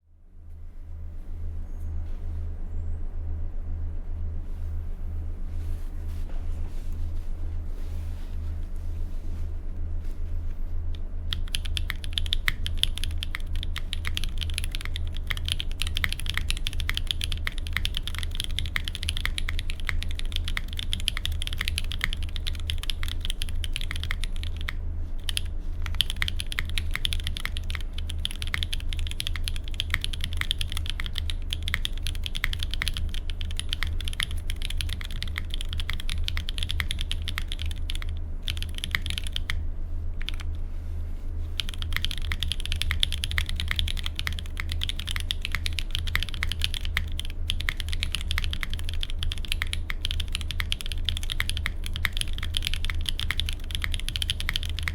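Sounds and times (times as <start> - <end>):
steady low hum: 0.0 - 54.9
mechanical keyboard typing: 11.0 - 39.6, 40.2 - 40.5, 41.6 - 54.9.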